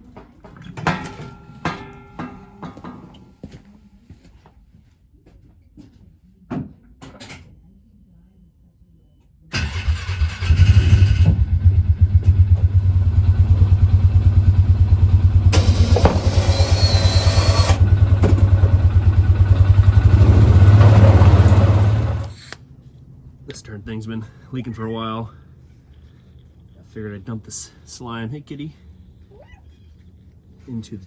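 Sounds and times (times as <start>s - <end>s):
motor running with fast pulsing: 15.5s - 22.4s.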